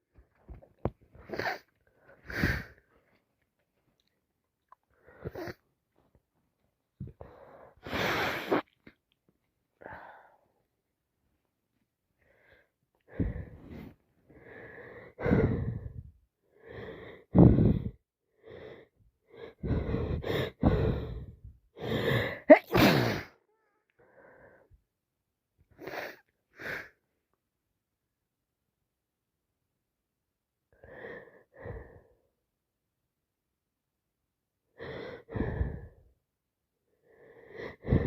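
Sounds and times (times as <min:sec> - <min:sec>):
woman wheezy breathing: 0:01.2 - 0:03.0, 0:04.9 - 0:05.7, 0:07.1 - 0:08.8, 0:12.2 - 0:23.4, 0:25.7 - 0:27.0, 0:34.7 - 0:36.1, 0:37.0 - 0:38.0
woman sniffing: 0:07.8 - 0:08.8
woman sneezing: 0:22.4 - 0:23.4.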